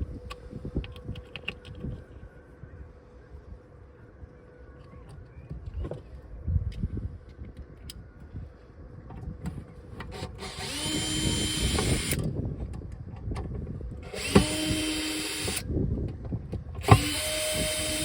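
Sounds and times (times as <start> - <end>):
cordless drill whining: 10.2 - 12.2, 14.0 - 15.6, 16.8 - 18.0.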